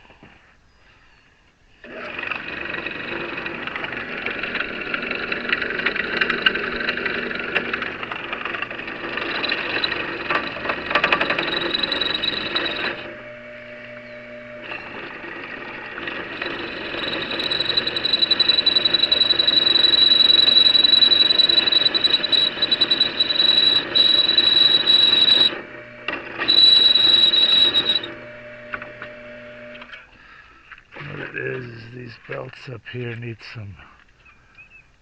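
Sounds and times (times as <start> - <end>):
drill press motor humming: 1.8 - 31.3
high-pitched belt squeal: 8.6 - 25.7, 26.4 - 28.4.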